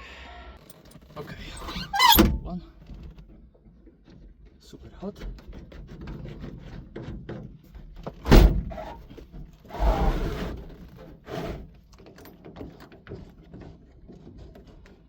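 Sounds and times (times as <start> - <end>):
door shutting: 1.5 - 2.6, 8.2 - 8.9
rustling scrape: 9.6 - 11.8.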